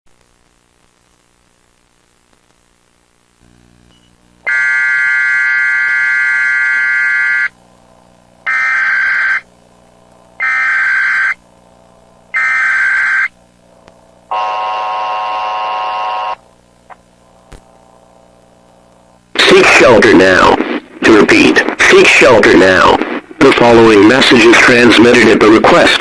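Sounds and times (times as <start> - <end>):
electronic tone: 3.8 - 7.5, 8.4 - 9.5, 10.4 - 11.4, 12.3 - 13.4, 14.3 - 16.4
screeching data tones: 4.5 - 7.5, 8.5 - 9.5, 10.4 - 11.4, 12.3 - 13.3.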